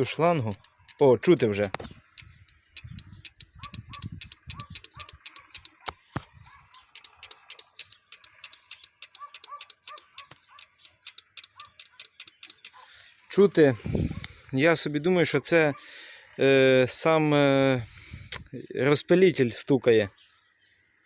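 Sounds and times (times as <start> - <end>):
tractor diesel engine running: 0.0 - 12.9
sharp regular ticking knock: 0.3 - 6.0, 6.7 - 12.8.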